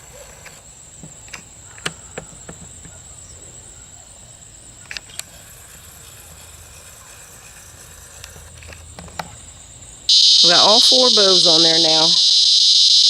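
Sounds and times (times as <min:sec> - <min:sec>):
high-pitched insect drone: 0:10.1 - 0:13.0.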